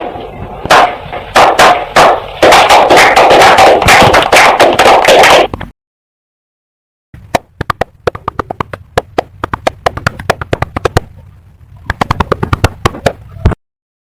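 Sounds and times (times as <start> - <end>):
people clapping: 0.7 - 5.5.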